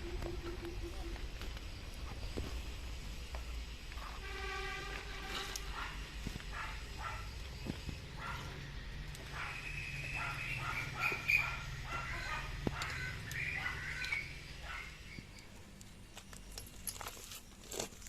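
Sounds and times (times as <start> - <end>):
low steady hum: 0.0 - 18.0
dog barking: 5.7 - 7.3, 8.2 - 8.6, 9.2 - 14.0, 14.6 - 15.0.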